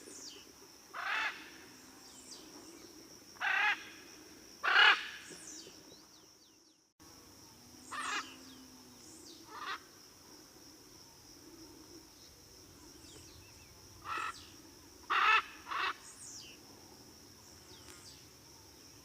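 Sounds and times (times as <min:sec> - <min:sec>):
macaw squawking: 0:04.7 - 0:05.2, 0:15.1 - 0:16.0.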